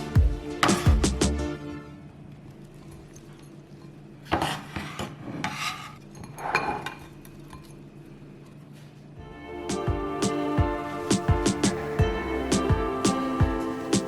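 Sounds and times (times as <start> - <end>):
utensil scraping cookware: 4.3 - 7.1.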